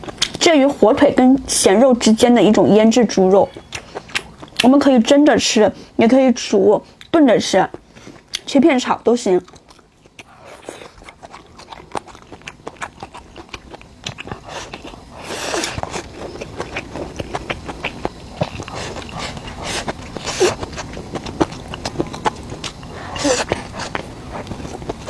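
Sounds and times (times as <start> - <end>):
person chewing: 0.0 - 0.4, 3.4 - 4.7, 9.4 - 25.0.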